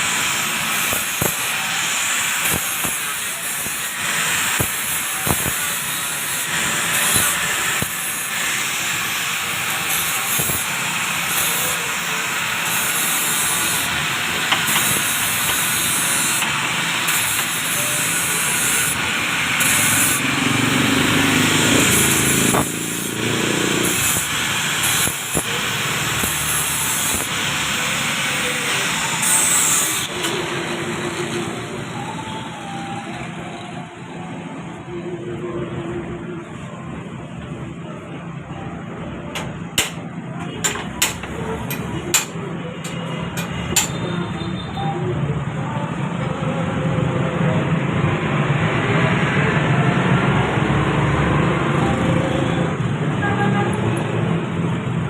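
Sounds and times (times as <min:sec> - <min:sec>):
loud steady hiss: 0:00.0 - 0:32.8.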